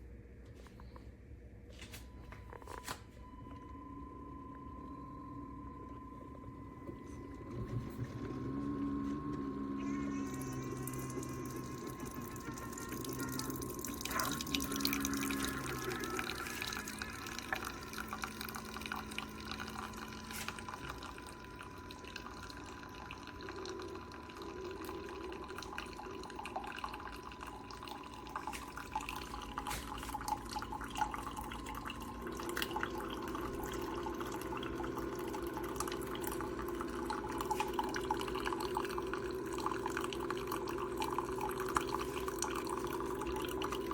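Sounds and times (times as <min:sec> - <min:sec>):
thin steady tone: 0:02.0 - 0:43.9
water running and dripping: 0:10.2 - 0:43.9.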